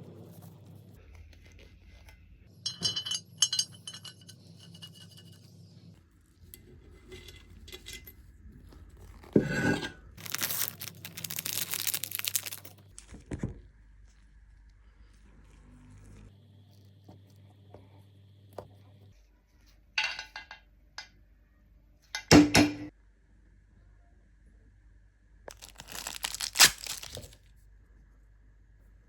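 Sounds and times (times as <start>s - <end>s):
metal parts clinking: 2.7s - 5.4s.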